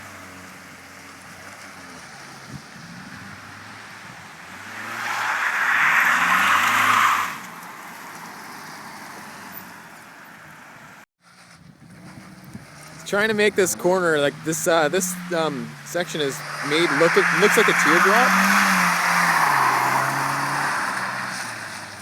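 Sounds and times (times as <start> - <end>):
car engine revving: 0.0 - 7.6, 11.4 - 22.0
tyres hissing on wet road: 14.3 - 22.0.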